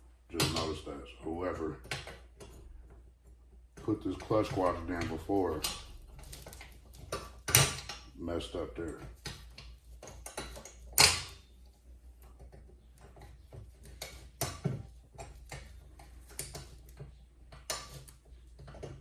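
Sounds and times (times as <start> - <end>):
metal parts clicking and knocking: 4.0 - 8.2, 8.8 - 11.5.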